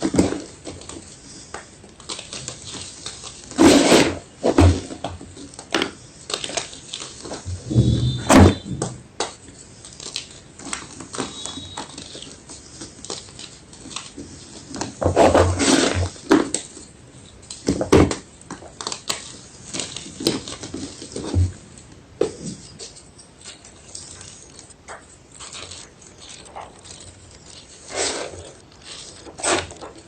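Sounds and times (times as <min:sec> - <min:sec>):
chalk crunching: 0:23.4 - 0:30.0.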